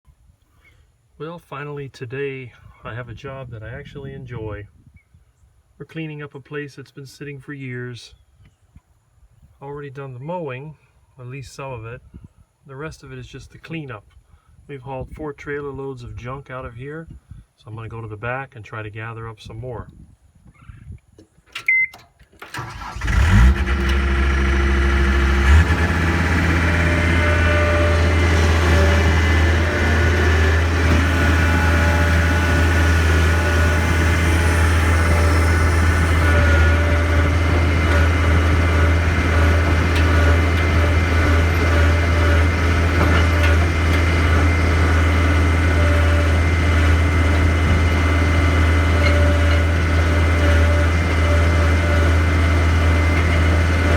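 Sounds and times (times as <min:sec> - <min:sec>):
engine starting and running: 0:21.6 - 0:53.9.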